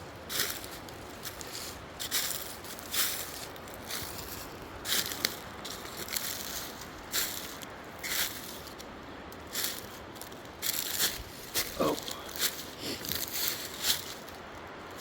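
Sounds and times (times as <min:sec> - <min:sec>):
footsteps walking: 0:09.5 - 0:15.0.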